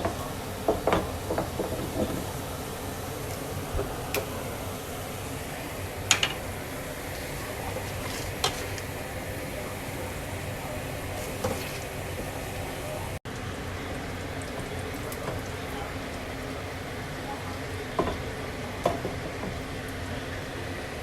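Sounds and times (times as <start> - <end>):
utensils clinking on cookware: 0.0 - 5.1, 6.0 - 13.2, 17.3 - 19.9
steady hiss: 0.0 - 21.0.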